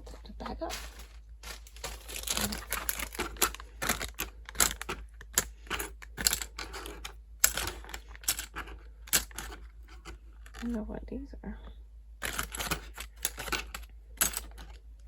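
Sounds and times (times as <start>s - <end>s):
packaging rustling: 0.1s - 9.4s
plastic parts clicking: 1.9s - 10.8s, 12.2s - 14.8s.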